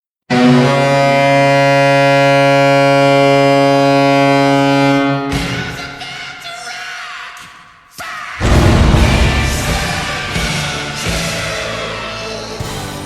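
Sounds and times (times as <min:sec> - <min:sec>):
goal horn blast: 0:08.4 - 0:10.8
loud burst of crowd noise: 0:08.4 - 0:11.1.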